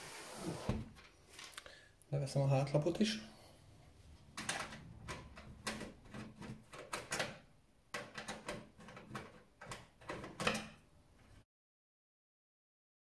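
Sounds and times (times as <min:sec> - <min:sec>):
computer hardware clicks and knocks: 0:04.3 - 0:10.9.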